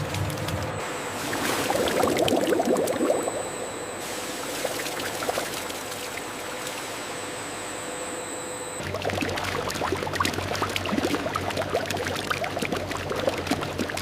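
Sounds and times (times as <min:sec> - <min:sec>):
faint steady hum: 0:00.0 - 0:14.0
liquid pouring and splashing: 0:01.2 - 0:03.2, 0:04.5 - 0:06.2, 0:08.8 - 0:14.0.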